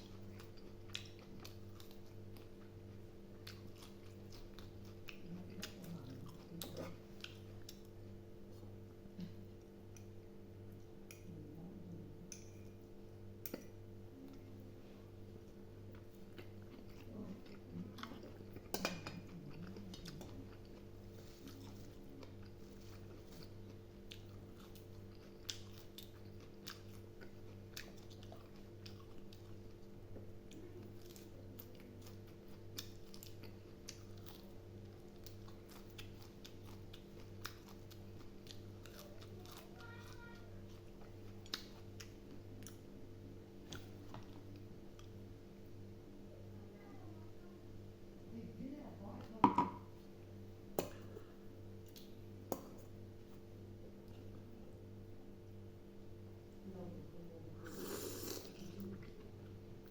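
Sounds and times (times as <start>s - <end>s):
chewing and mouth clicks: 0.0s - 2.7s, 3.4s - 10.2s, 15.9s - 42.9s, 51.8s - 52.6s.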